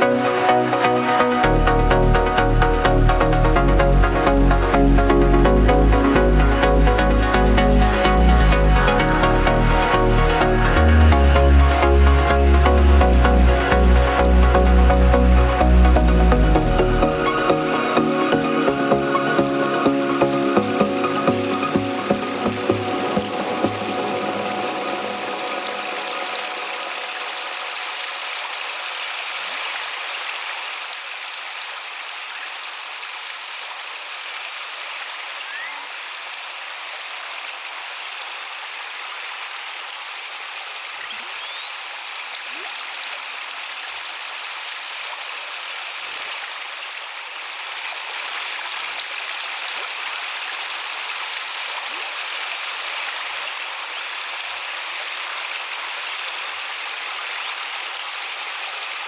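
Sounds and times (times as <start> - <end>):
water splashing over waterfall: 17.2 - 59.0.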